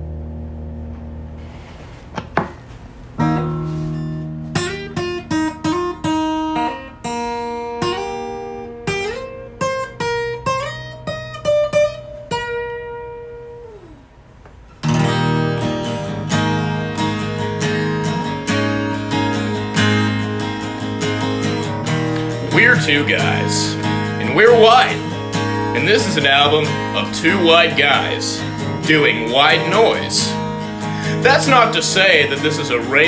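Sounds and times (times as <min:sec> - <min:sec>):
acoustic guitar playing: 0:00.0 - 0:33.0.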